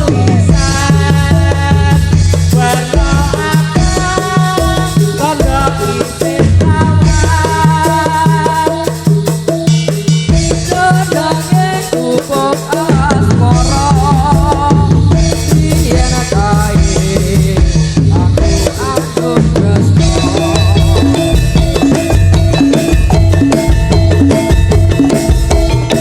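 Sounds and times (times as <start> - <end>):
drums and percussion beat: 0.0 - 26.0
wavering melody: 18.4 - 26.0.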